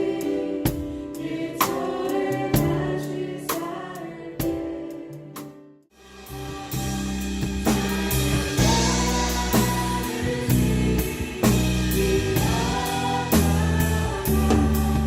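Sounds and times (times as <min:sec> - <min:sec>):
bass: 0:06.0 - 0:15.0
drum-kit beat: 0:06.2 - 0:15.0
guitar: 0:06.4 - 0:15.0
person singing: 0:07.8 - 0:15.0.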